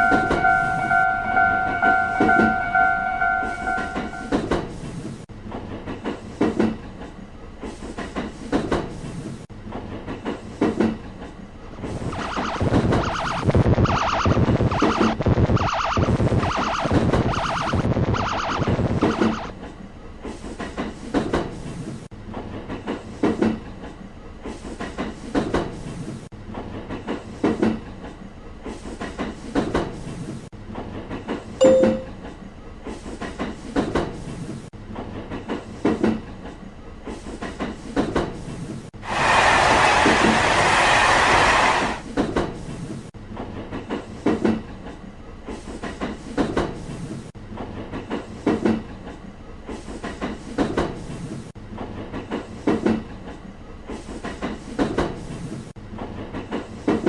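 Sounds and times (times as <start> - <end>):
short sharp tone: 0.0 - 4.4, 31.6 - 32.2
train wheels clacking over rail joints: 1.5 - 11.5, 19.6 - 31.6, 32.2 - 38.8, 39.4 - 57.0
loud rushing hiss: 39.0 - 42.0.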